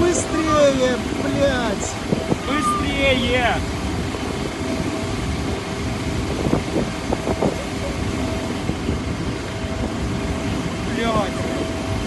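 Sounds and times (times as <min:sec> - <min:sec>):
engine rumble with whine: 0:00.0 - 0:12.0
wind noise on microphone: 0:00.0 - 0:12.0
faint distant shouts: 0:02.3 - 0:03.3.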